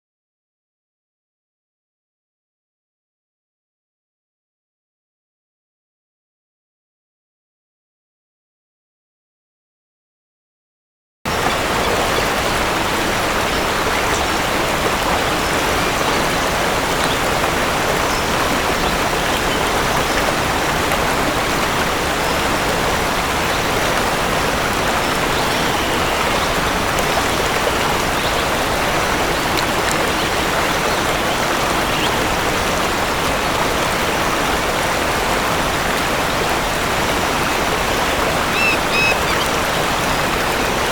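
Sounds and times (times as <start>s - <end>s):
waterfall rushing: 11.3s - 40.9s
faint high chirps: 38.5s - 39.5s.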